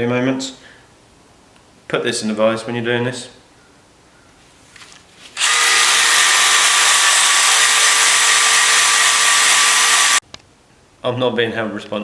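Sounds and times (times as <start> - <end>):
power tool motor whine: 5.4 - 10.2.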